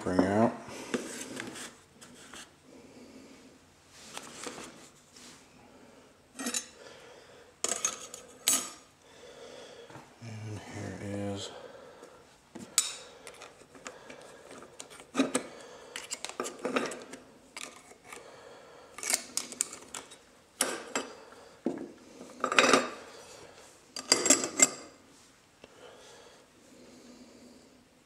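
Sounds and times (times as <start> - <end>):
metal parts clinking and clattering: 24.0 - 24.9.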